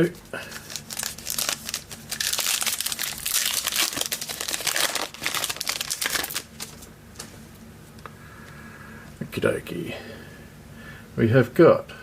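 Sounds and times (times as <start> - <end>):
foil wrapper crinkling and tearing: 0.4 - 6.9.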